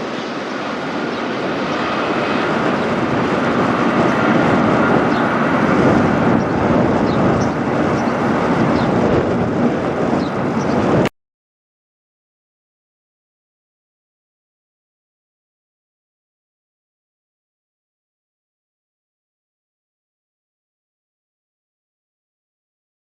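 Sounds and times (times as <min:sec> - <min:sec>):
jet airliner flying over: 0:00.0 - 0:11.1.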